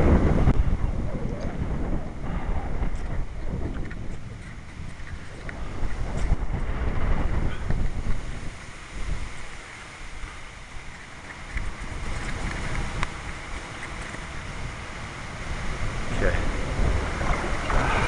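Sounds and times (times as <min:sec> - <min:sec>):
gusty wind buffeting microphone: 0:00.0 - 0:18.0
water sloshing from wading: 0:09.3 - 0:15.6.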